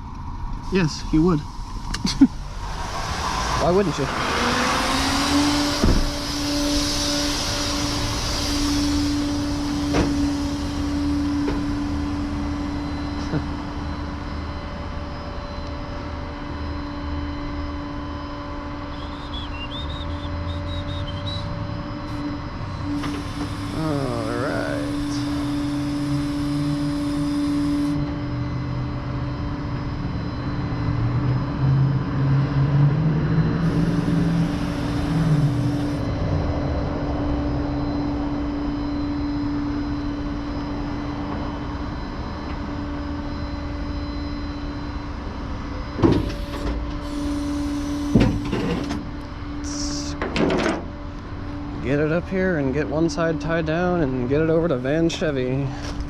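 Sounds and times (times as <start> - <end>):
vehicle engine running: 0.0 - 16.2, 30.1 - 43.7
steady whine: 0.0 - 56.0.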